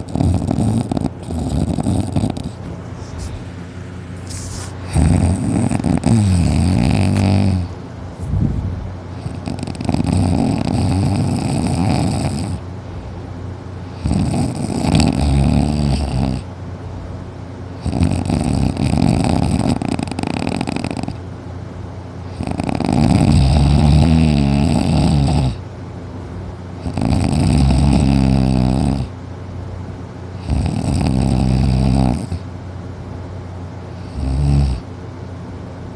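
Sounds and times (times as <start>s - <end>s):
loud snoring: 0.0s - 2.6s, 4.8s - 7.7s, 9.2s - 12.6s, 14.0s - 16.5s, 17.8s - 21.2s, 22.3s - 25.6s, 26.8s - 29.1s, 30.4s - 32.4s, 34.0s - 34.9s.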